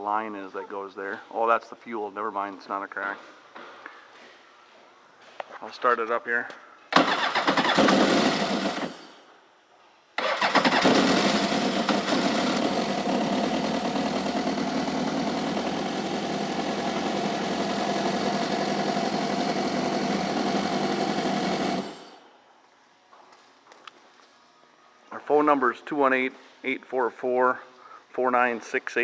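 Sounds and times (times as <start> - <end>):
jet ski engine starting and idling: 6.9 - 9.2, 10.2 - 22.3.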